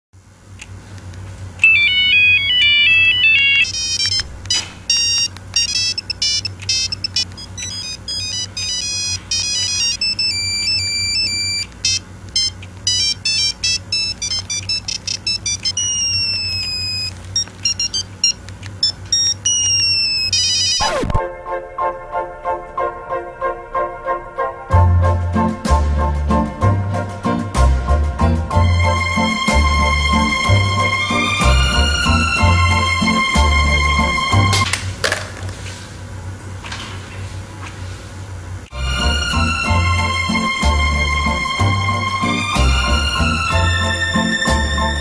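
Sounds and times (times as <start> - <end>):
low steady hum: 0.2 - 21.2
phone ringtone electronic beeps: 1.6 - 21.1.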